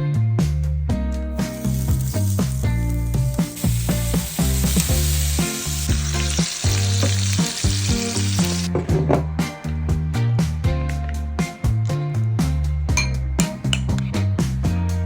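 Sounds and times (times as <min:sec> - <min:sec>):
music with rhythmic bass line: 0:00.0 - 0:15.0
food sizzling in a pan: 0:01.4 - 0:08.7.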